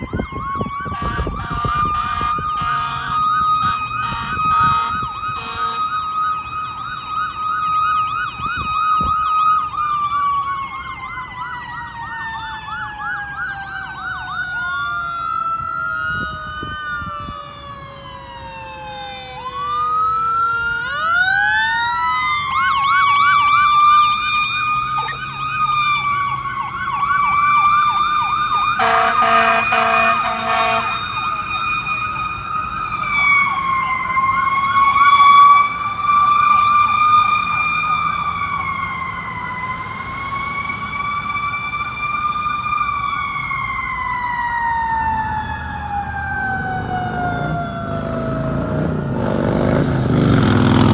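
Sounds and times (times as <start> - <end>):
warbling siren yelp: 0.0 - 49.8
wailing siren: 0.0 - 50.9
short horn blasts: 4.0 - 5.9, 28.8 - 31.2.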